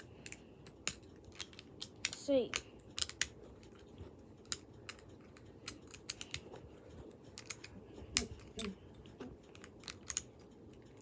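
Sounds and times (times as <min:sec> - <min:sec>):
plastic bricks clicking: 0:00.0 - 0:03.3.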